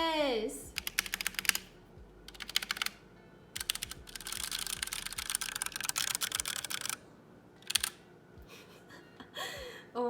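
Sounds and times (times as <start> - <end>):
quick clicks: 3.6 - 7.0, 7.6 - 8.0.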